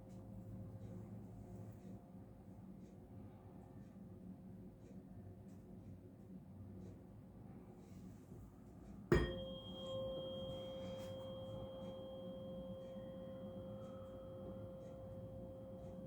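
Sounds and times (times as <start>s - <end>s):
tuning fork ringing: 9.1s - 16.0s.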